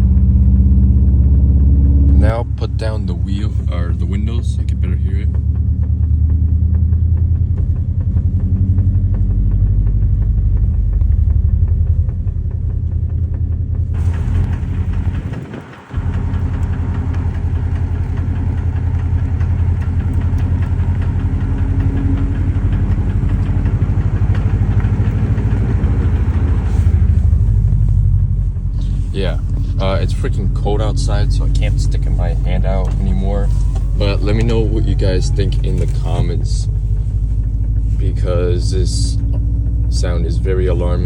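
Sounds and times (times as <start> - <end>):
engine and road rumble: 0.0 - 41.0
road and tyre hiss: 14.0 - 37.2.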